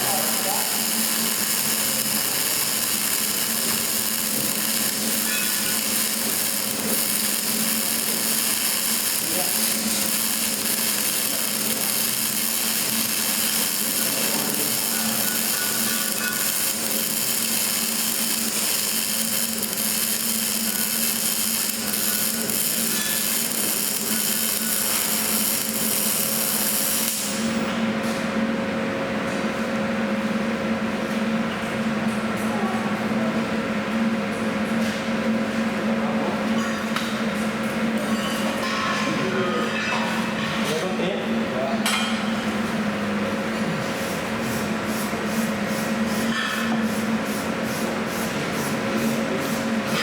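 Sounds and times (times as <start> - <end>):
arc welding hiss and crackle: 0.0 - 27.7, 43.8 - 50.0
low machine hum: 0.0 - 36.4.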